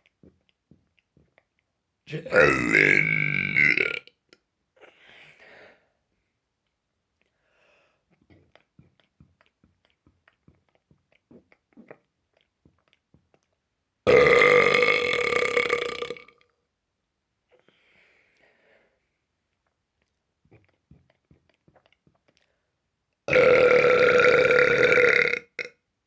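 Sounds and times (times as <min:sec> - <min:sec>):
person burping: 0:02.1 - 0:04.2, 0:14.1 - 0:16.4, 0:23.3 - 0:25.8
faint mouth clicks: 0:19.5 - 0:22.6.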